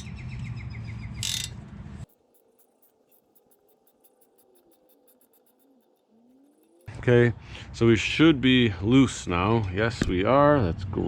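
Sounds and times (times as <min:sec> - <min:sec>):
metal scrape: 0:01.2 - 0:07.2.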